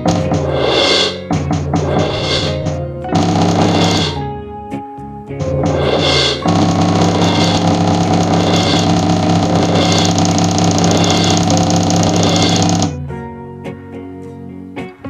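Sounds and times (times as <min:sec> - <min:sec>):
synthetic engine-like drone with hiss: 0:01.8 - 0:04.2, 0:05.7 - 0:12.9.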